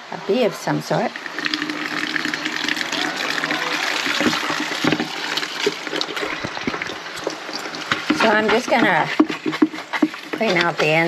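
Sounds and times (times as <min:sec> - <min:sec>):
water running and splashing: 0:00.7 - 0:11.0
small knocks: 0:04.1 - 0:11.0.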